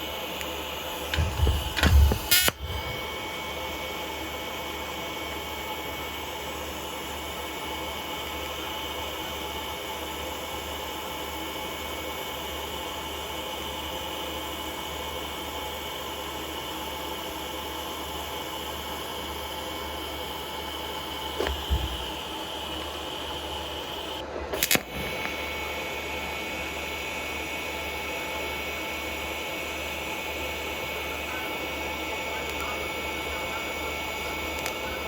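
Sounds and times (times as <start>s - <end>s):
thin steady whine: 0.0s - 35.0s
welder arc hissing and humming: 0.0s - 35.0s
welder click: 0.4s - 3.3s, 24.5s - 25.4s, 34.5s - 34.8s.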